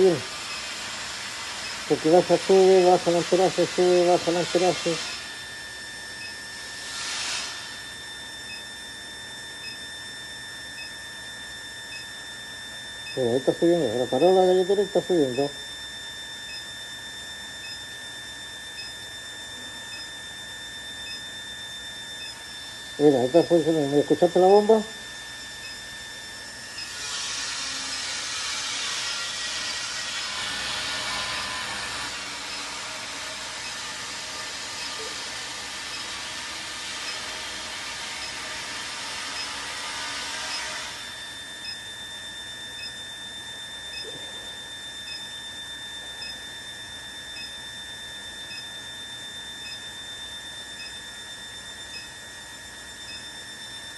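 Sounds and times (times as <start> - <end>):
furnace equipment rushing hiss: 0.0 - 5.3, 6.8 - 7.8
furnace high-pitched whine: 0.0 - 53.9.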